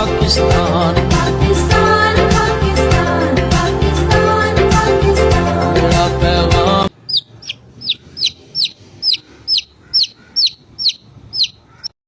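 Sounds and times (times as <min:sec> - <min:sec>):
bird high downward-sliding call: 0:07.1 - 0:12.0.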